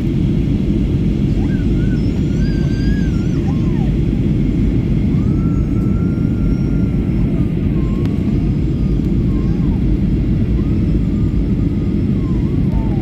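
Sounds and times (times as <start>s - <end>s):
jet engine rumble in cabin: 0.0s - 13.0s.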